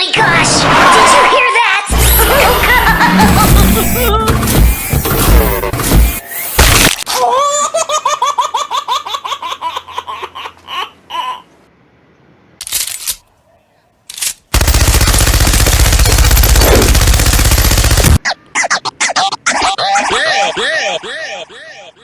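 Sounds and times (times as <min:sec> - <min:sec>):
high-pitched rapid laughter: 0:01.9 - 0:04.3, 0:07.1 - 0:11.4, 0:18.2 - 0:22.0
loud fast rattling: 0:14.5 - 0:18.2.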